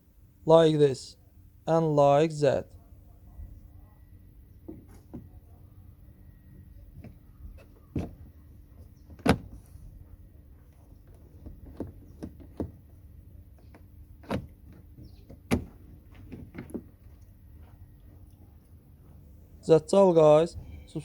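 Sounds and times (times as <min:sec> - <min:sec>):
car door handle clicks and clunks: 0:09.1 - 0:09.6, 0:11.1 - 0:12.9, 0:13.6 - 0:16.9.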